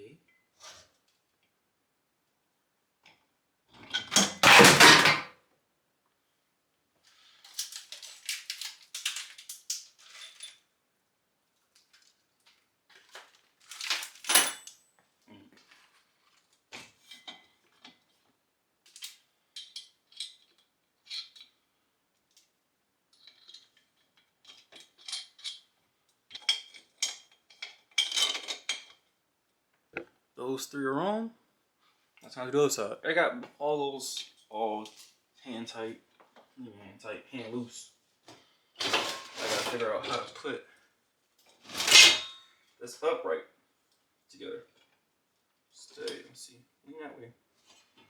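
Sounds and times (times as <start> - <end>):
metal parts clinking: 4.0 - 5.3, 19.0 - 21.5, 24.4 - 25.6
heavy metal clank: 4.4 - 5.3.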